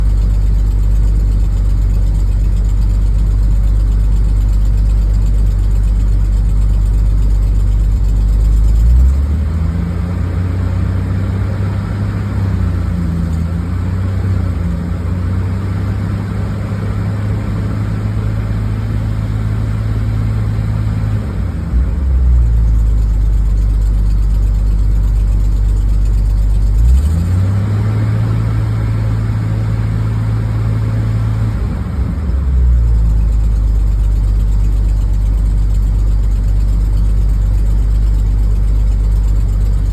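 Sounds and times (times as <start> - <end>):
car engine idling and revving: 0.0 - 39.9.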